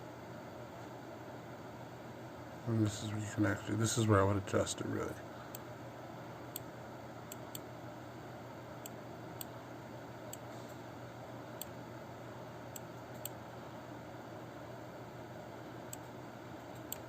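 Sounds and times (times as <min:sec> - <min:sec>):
steady low hum: 0:00.0 - 0:17.0
computer mouse clicking: 0:07.3 - 0:07.6, 0:12.7 - 0:13.4, 0:16.8 - 0:17.0.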